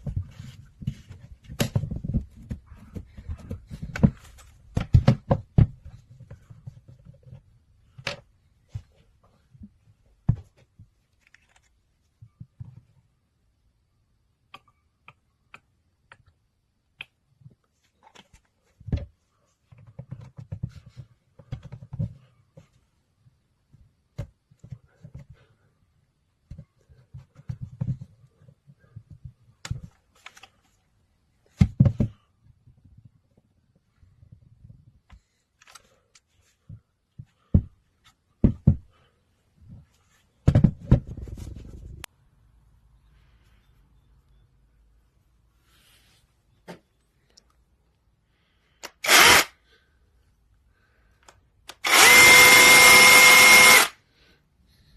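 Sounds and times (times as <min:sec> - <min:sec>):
rustling scrape: 0:41.0 - 0:42.1.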